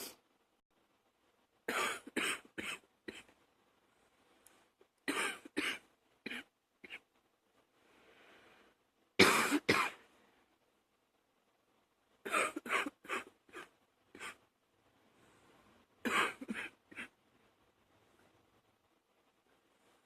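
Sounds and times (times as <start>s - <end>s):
woman coughing: 1.7s - 3.3s, 5.1s - 7.0s, 9.2s - 10.0s, 12.3s - 14.4s, 16.0s - 17.1s
woman breathing: 7.7s - 8.9s.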